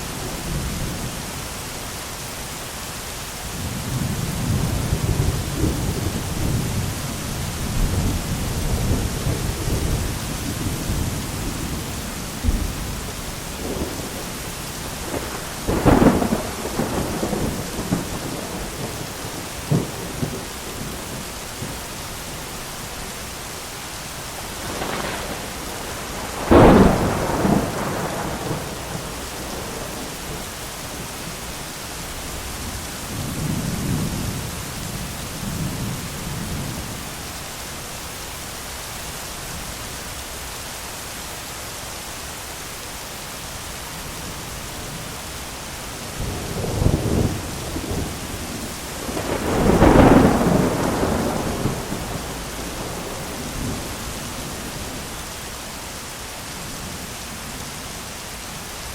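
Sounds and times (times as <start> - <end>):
heavy rain hissing: 0.0 - 58.9
thunderclaps: 3.6 - 21.8, 24.5 - 31.0, 46.1 - 55.1
rolling thunder rumbles: 3.6 - 22.0, 24.4 - 31.4, 46.0 - 55.4.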